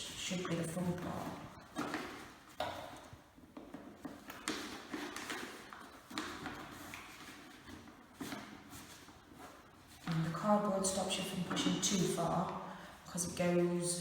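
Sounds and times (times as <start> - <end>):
paper rustling: 0.2 - 14.0.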